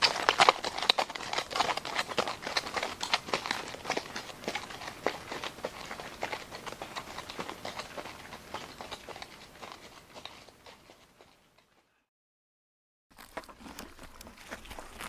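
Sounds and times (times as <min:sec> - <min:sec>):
horse hoofbeats on hard ground: 0:00.0 - 0:12.0.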